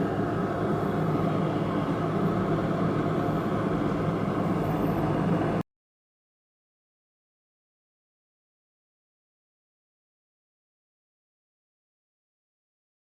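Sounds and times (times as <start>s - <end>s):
electric kettle heating water: 0.0s - 5.6s.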